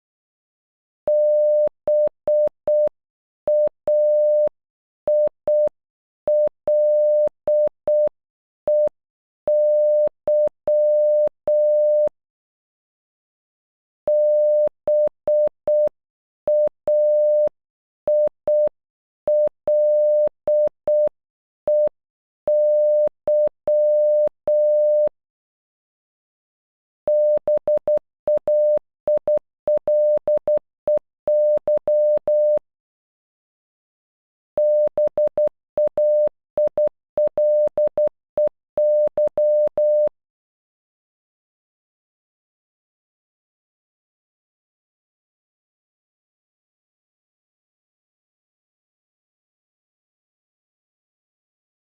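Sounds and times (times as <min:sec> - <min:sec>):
morse code beeps: 0:01.1 - 0:02.9, 0:03.5 - 0:04.5, 0:06.3 - 0:08.1, 0:09.5 - 0:12.1, 0:14.1 - 0:15.9, 0:16.5 - 0:17.5, 0:19.3 - 0:21.1, 0:22.5 - 0:25.1, 0:27.1 - 0:32.6, 0:34.6 - 0:40.1.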